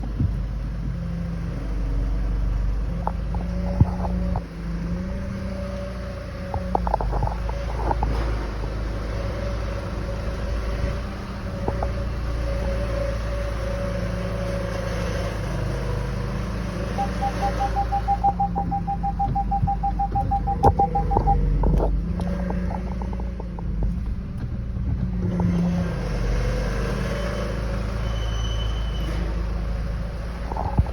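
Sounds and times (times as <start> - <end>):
car low rumble: 0.0 - 30.9
rapid beeps: 16.9 - 21.5.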